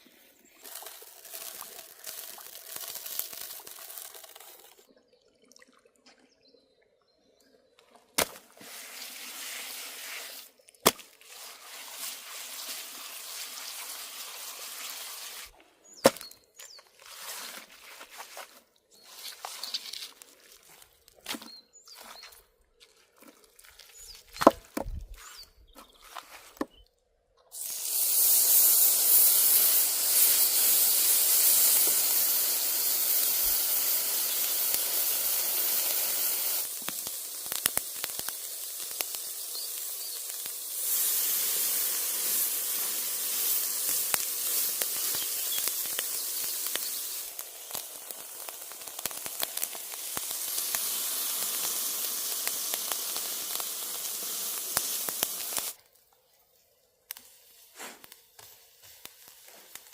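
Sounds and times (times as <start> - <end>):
food sizzling in a pan: 0.0 - 4.8, 11.4 - 15.5, 27.6 - 55.8, 57.1 - 59.9.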